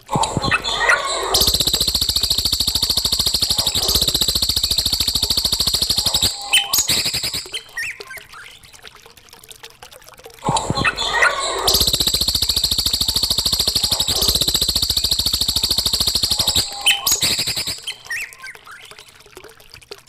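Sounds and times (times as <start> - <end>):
bird chirps: 0.2 - 8.2, 10.6 - 18.9
songbird rattling trill: 0.3 - 8.0, 10.8 - 18.9.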